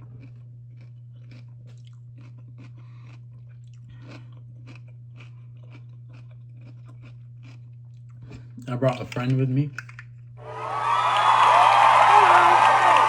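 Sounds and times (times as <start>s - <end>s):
person chewing crunchy pickle: 0.0s - 10.3s
steady low hum: 0.0s - 13.0s.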